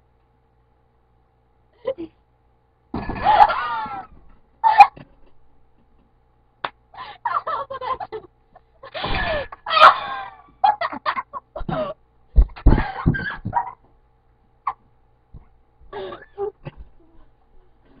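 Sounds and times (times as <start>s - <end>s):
people laughing hard: 3.1s - 5.2s, 7.0s - 12.0s.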